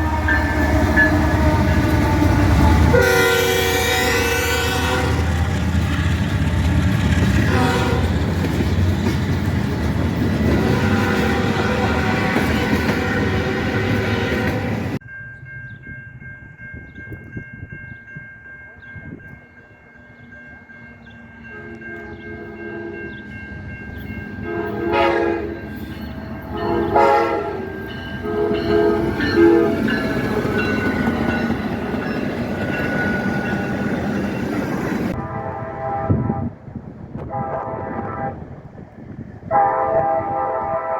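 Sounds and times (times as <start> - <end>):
train horn blasts: 0.0 - 6.1, 7.3 - 8.4, 10.3 - 15.0, 21.4 - 23.3, 24.4 - 31.7, 34.8 - 38.6, 39.4 - 40.9
passing train: 0.0 - 40.9.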